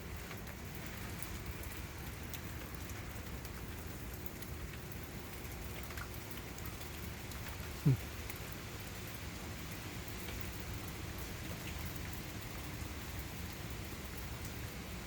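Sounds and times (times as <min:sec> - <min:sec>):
heavy rain falling: 0:00.0 - 0:15.0.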